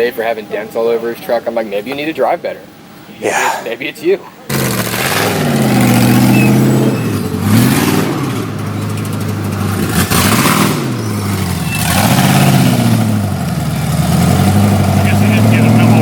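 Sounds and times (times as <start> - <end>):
vehicle engine revving: 4.5 - 16.0.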